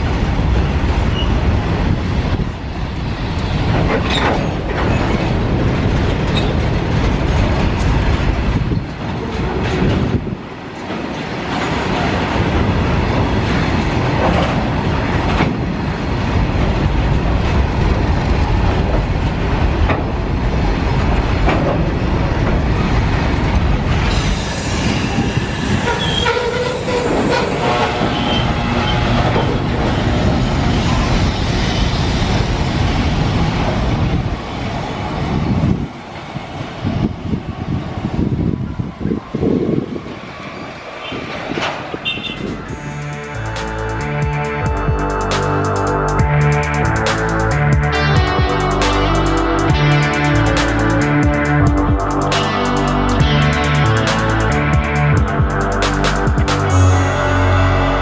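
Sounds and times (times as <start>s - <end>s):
train rumble: 0.0s - 58.0s
train wheels clacking over rail joints: 3.4s - 15.8s, 17.4s - 31.0s
wheels squealing: 24.1s - 31.1s.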